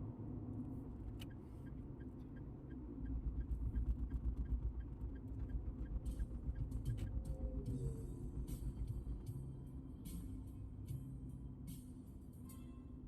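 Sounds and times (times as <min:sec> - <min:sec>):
low rumble: 0:03.1 - 0:12.1.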